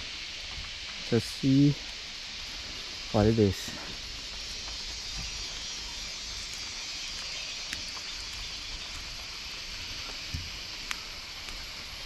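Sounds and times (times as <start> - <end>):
high-pitched forest ambience hiss: 0.0 - 12.0
faint ticks: 3.8 - 12.0.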